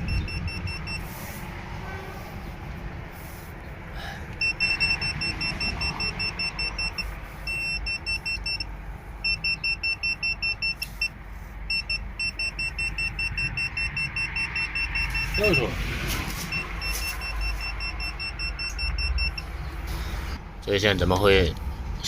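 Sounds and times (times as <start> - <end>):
high-pitched rapid beeping: 0.0 - 1.0, 4.4 - 15.7, 16.5 - 19.5.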